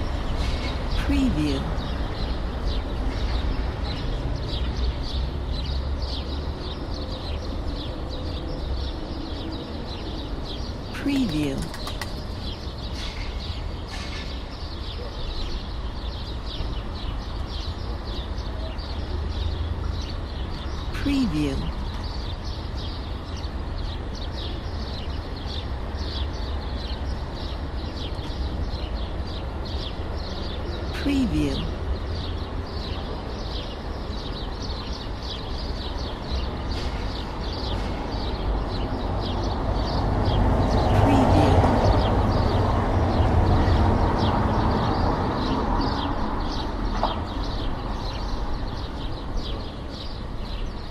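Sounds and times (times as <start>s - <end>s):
small birds chirping: 0.0s - 50.9s
traffic rumble: 0.0s - 50.9s
bird chirps: 10.5s - 14.1s.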